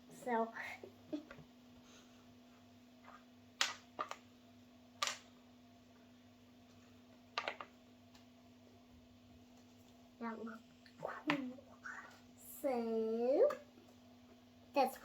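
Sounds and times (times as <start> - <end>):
faint steady hum: 0.0 - 15.0
plastic toy pieces clicking: 5.0 - 5.2.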